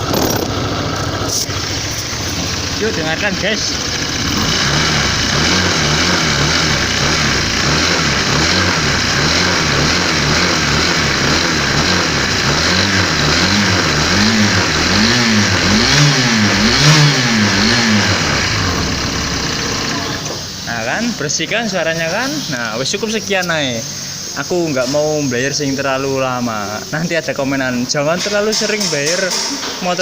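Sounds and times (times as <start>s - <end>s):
scooter engine revving: 0.0s - 20.7s.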